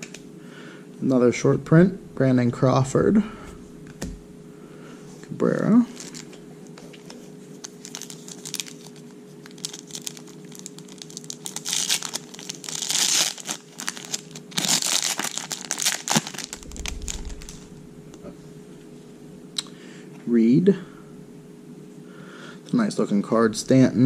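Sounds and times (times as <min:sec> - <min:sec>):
wrapper crinkling and tearing: 0:06.0 - 0:06.4, 0:07.6 - 0:17.4.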